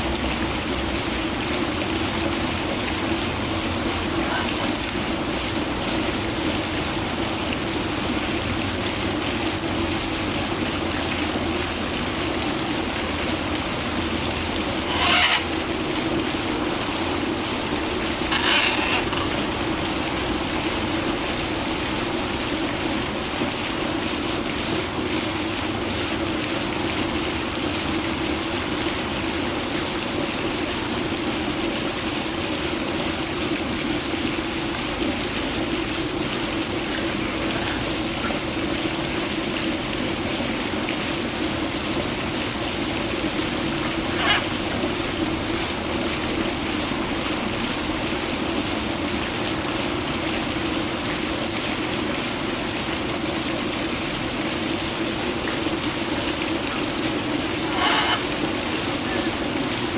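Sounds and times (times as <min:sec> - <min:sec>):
running water rushing: 0:00.0 - 0:59.9
parrot squawks: 0:04.1 - 0:04.7, 0:14.8 - 0:15.6, 0:18.2 - 0:19.4, 0:44.0 - 0:44.5, 0:57.6 - 0:58.3.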